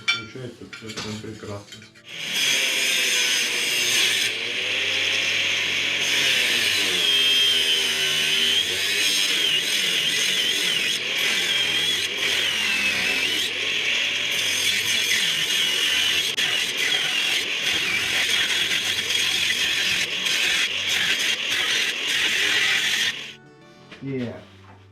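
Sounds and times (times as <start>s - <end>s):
angle grinder cutting steel: 2.0s - 23.4s.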